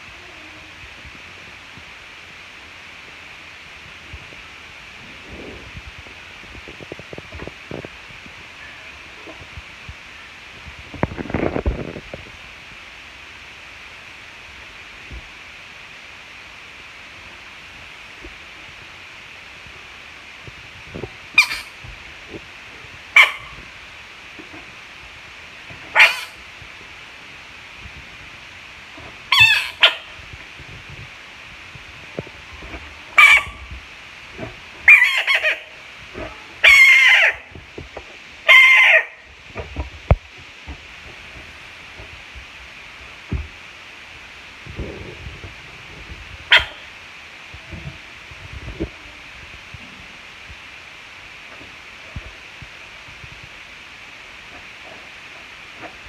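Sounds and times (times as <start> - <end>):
faint hiss: 0.0 - 56.0
sharp animal call: 21.4 - 21.8, 23.2 - 23.6, 25.9 - 26.4, 29.3 - 30.1, 33.2 - 33.6, 34.9 - 35.7, 36.6 - 37.5, 38.4 - 39.2, 46.5 - 46.9.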